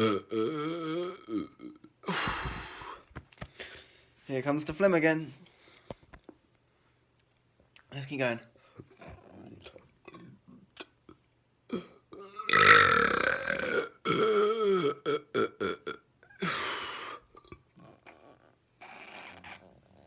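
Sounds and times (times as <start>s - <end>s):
man burping loudly: 0.0s - 1.9s, 11.7s - 16.6s.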